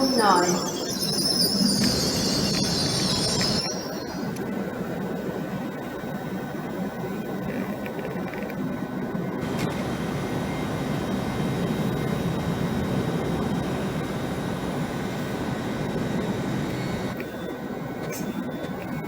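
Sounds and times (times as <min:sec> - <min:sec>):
passenger train rumbling: 0:09.4 - 0:17.2.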